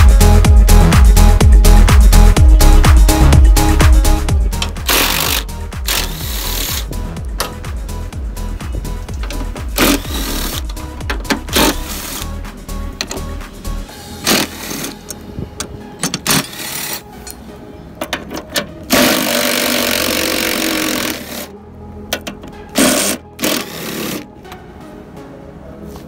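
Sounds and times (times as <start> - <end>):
sharp clicks and knocks: 7.3 - 7.7, 9.1 - 12.2
loud noisy tool burst: 18.9 - 21.2.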